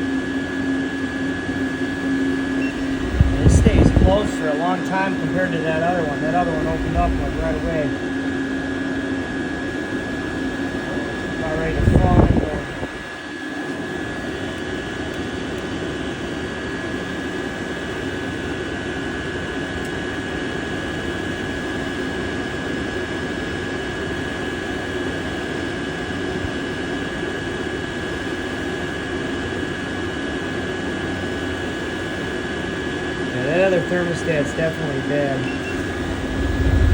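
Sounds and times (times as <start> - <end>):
heater blower rushing: 0.0 - 16.0, 33.4 - 36.9
constant high whine: 0.0 - 36.9.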